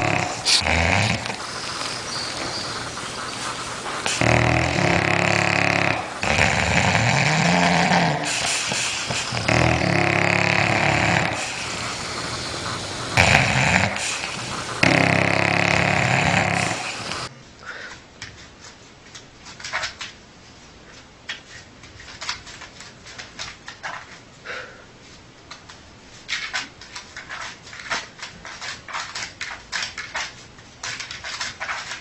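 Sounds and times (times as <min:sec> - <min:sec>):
dog snoring: 0:00.0 - 0:17.3.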